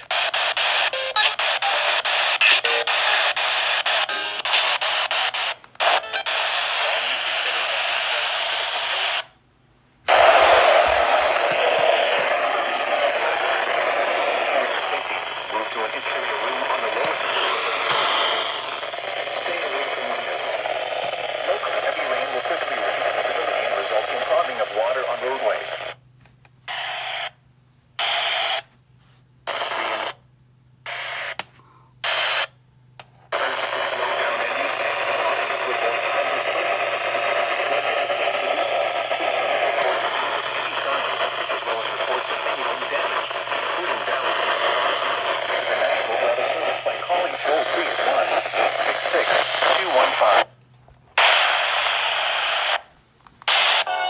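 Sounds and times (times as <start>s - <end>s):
harsh buzzing data bursts: 0.0s - 9.3s, 26.7s - 27.4s, 28.0s - 28.6s
radio static hiss: 0.0s - 9.4s, 10.1s - 26.0s, 26.7s - 27.4s, 28.0s - 28.7s, 29.5s - 30.2s, 30.9s - 32.6s, 33.2s - 50.6s, 51.2s - 54.0s.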